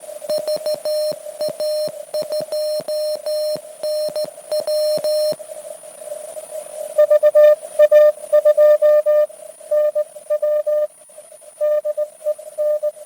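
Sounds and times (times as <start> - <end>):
morse code tone: 0.3 - 5.4, 7.0 - 10.9, 11.6 - 13.0.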